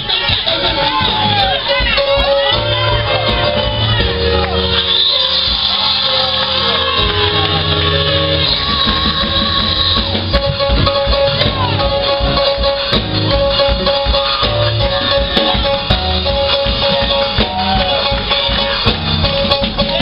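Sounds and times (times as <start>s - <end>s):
people singing and shouting: 0.0s - 12.6s
drums: 0.0s - 20.0s
gospel band music: 0.0s - 20.0s.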